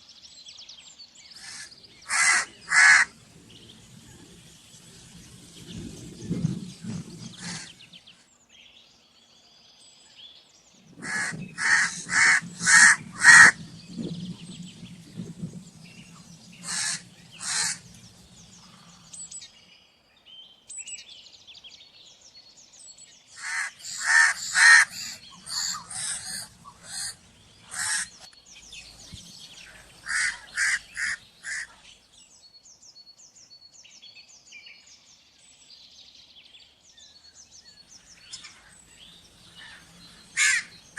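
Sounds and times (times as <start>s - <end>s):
faint small birds chirping: 0.0s - 40.9s
crows cawing: 1.4s - 3.2s, 7.2s - 7.8s, 11.0s - 13.6s, 16.6s - 17.9s, 23.4s - 28.2s, 30.0s - 31.8s, 39.5s - 40.9s.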